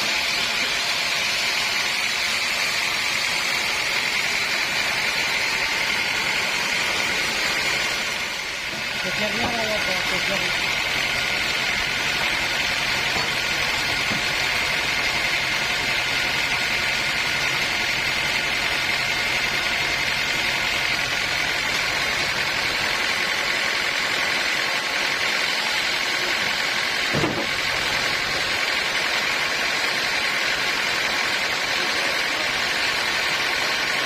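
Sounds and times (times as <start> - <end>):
sawmill machinery hiss: 0.0 - 34.0.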